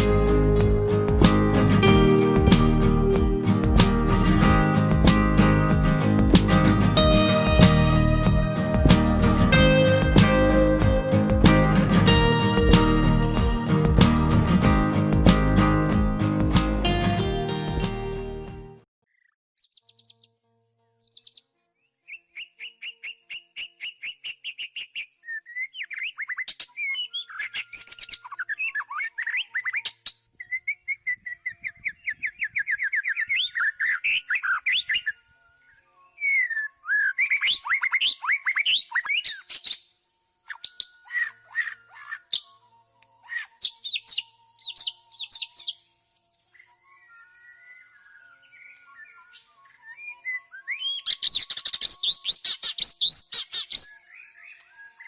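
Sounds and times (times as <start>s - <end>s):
bird singing: 22.1s - 55.0s.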